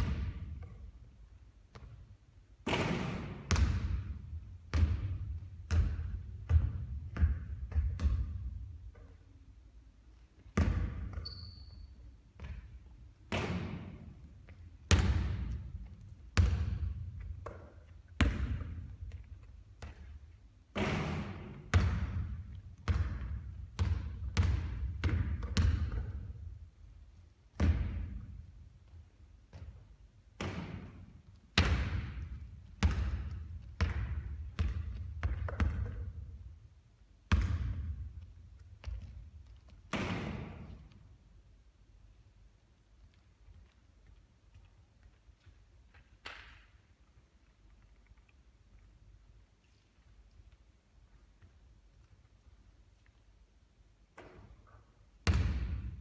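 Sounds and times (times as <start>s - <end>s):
basketball bouncing on court: 0.0s - 0.9s, 1.7s - 9.2s, 10.4s - 26.6s, 27.5s - 28.5s, 29.4s - 36.6s, 37.3s - 41.0s, 55.2s - 56.0s
short high squeak: 11.2s - 11.9s.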